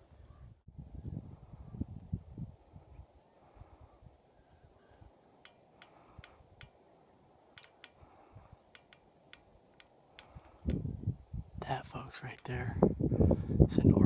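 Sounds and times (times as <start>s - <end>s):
wind rumble on microphone: 0.0s - 4.2s, 10.3s - 14.0s
faint sharp clicks: 5.4s - 6.8s, 7.5s - 10.8s.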